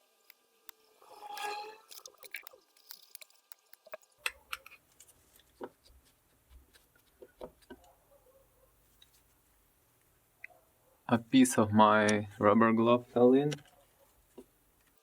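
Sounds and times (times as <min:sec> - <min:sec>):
small parts clicking and tapping: 0:01.9 - 0:05.7.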